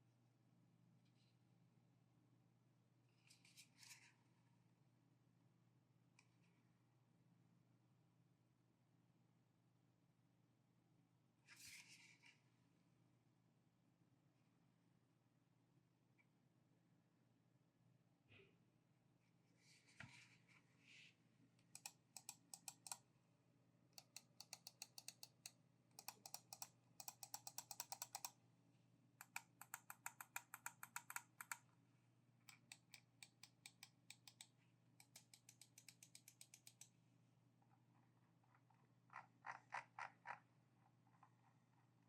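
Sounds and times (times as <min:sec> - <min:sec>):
mouse clicking: 0:21.6 - 0:23.0, 0:24.0 - 0:28.4, 0:29.2 - 0:31.7, 0:32.5 - 0:36.9.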